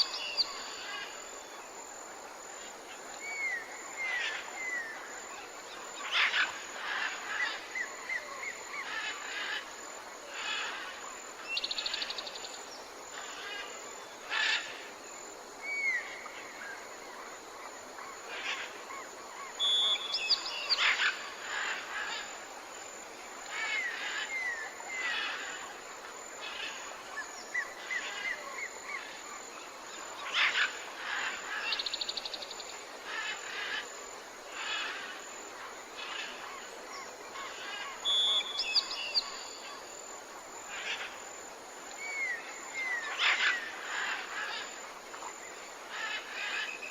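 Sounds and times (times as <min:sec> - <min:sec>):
background hiss: 0:00.0 - 0:46.9.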